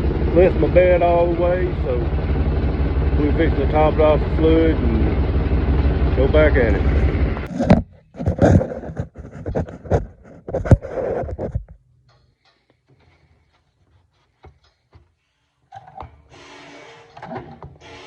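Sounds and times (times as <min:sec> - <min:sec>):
low hum: 0:00.0 - 0:12.5
clunks and scrapes: 0:06.7 - 0:17.8.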